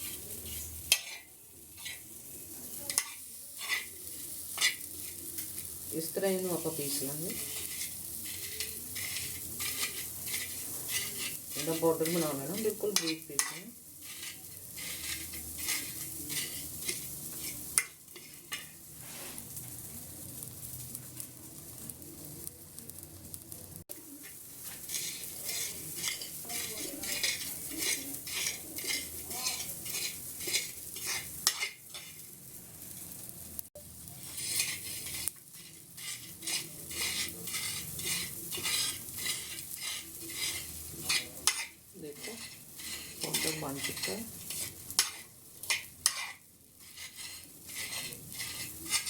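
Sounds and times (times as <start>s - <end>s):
grinding powder scraping strokes: 2.9s - 5.6s, 6.4s - 19.6s, 24.6s - 32.3s, 34.2s - 49.0s.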